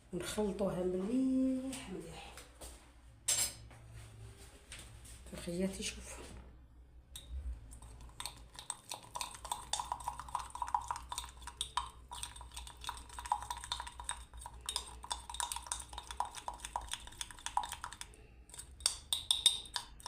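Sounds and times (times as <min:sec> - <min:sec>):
spoon clinking against container: 0:07.2 - 0:20.0.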